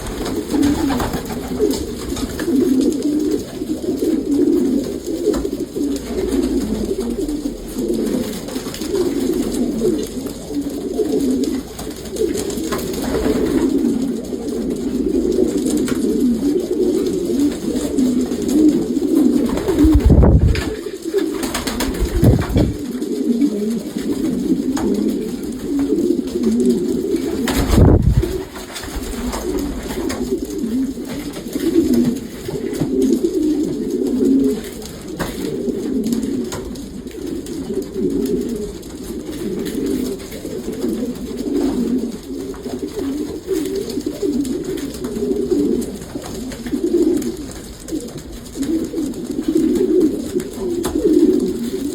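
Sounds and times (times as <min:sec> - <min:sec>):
pigeons cooing: 0:00.0 - 0:51.9
dull thumps: 0:22.0 - 0:22.8.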